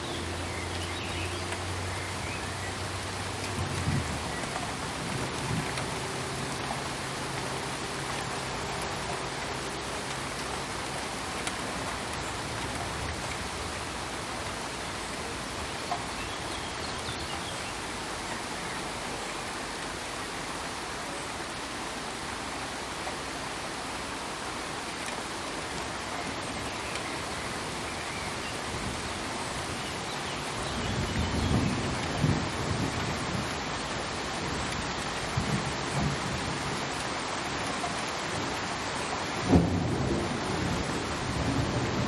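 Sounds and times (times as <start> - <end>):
steady rain: 0.0 - 42.0
raindrop ticks: 0.1 - 19.1, 24.8 - 28.3.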